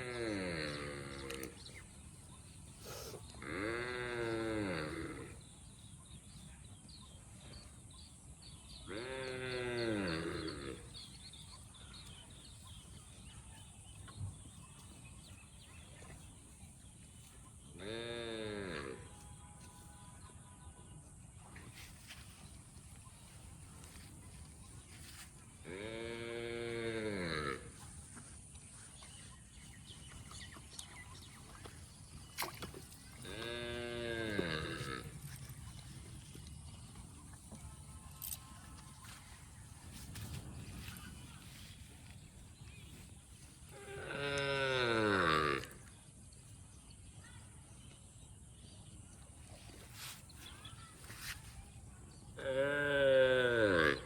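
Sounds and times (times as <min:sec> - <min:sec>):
cow mooing: 0:00.0 - 0:01.6, 0:03.4 - 0:05.4, 0:08.9 - 0:10.9, 0:25.7 - 0:27.8, 0:33.2 - 0:35.4, 0:43.7 - 0:45.8, 0:52.4 - 0:54.0
farm animal bleating: 0:03.4 - 0:05.4, 0:08.9 - 0:10.9, 0:33.2 - 0:35.3, 0:43.7 - 0:45.8.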